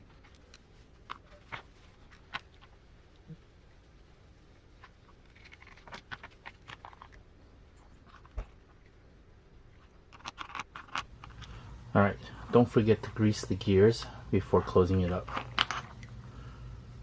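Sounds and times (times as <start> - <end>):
small parts clicking and tapping: 0.0 - 3.4, 4.8 - 9.0, 9.8 - 11.6, 15.1 - 16.2.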